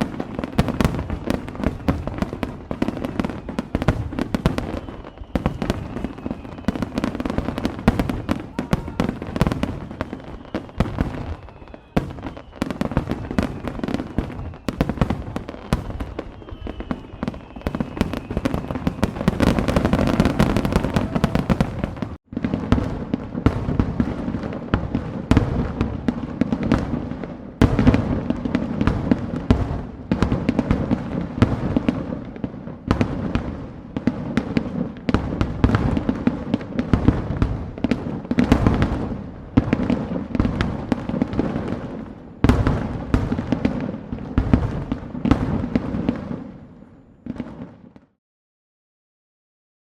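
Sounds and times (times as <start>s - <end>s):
faint firework whistles: 0.0s - 48.0s
fireworks bangs and crackling: 0.0s - 48.2s.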